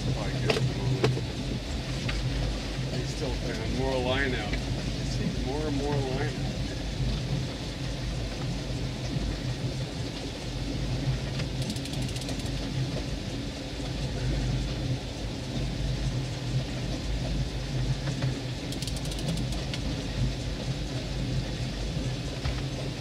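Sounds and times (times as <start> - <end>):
boat motor running: 0.0 - 23.0
water noise: 0.0 - 23.0
rapid fine clicking: 11.4 - 12.7, 18.6 - 19.9.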